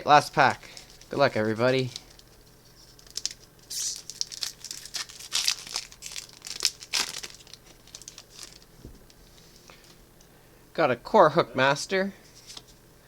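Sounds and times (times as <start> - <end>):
foil wrapper tearing and crinkling: 0.7 - 8.8.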